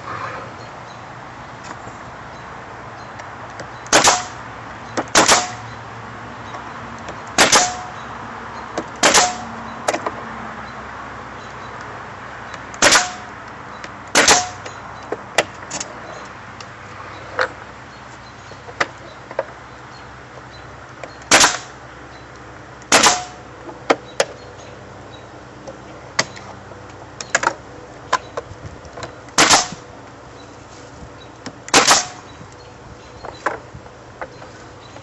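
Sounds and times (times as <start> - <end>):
nail gun shots into wood: 3.9 - 4.4, 5.0 - 5.6, 7.4 - 7.9, 9.0 - 9.5, 12.8 - 13.3, 14.2 - 14.6, 21.3 - 21.7, 22.9 - 23.4, 29.4 - 29.8, 31.7 - 32.2.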